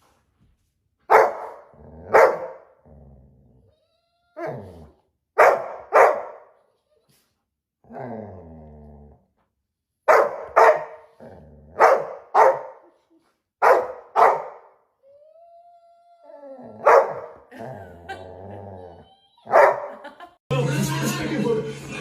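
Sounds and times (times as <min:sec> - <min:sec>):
dog barking: 0:01.1 - 0:02.7, 0:05.4 - 0:06.5, 0:10.1 - 0:11.1, 0:11.8 - 0:12.9, 0:13.6 - 0:14.7, 0:16.8 - 0:17.4, 0:19.4 - 0:20.0
dog whining: 0:15.0 - 0:17.3, 0:18.1 - 0:19.7.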